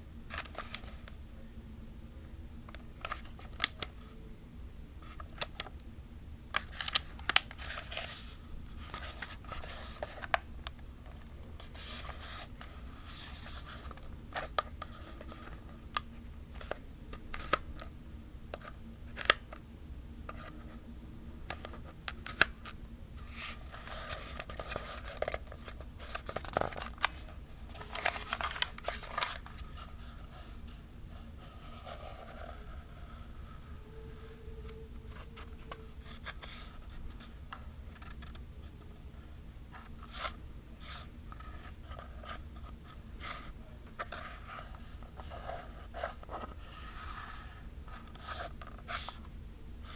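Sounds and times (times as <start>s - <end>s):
soft scratchy rubbing: 27.2s - 37.4s.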